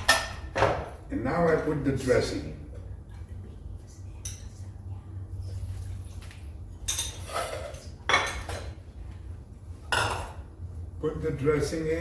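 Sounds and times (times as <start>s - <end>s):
steady low hum: 0.0s - 12.0s
dishes and utensils clinking: 6.8s - 8.8s, 9.9s - 10.4s.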